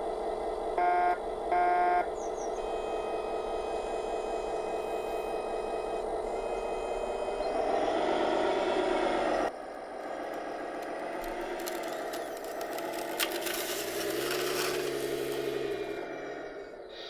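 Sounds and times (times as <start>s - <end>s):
toy loader engine hum: 0.0s - 16.9s
scrape: 13.4s - 15.8s.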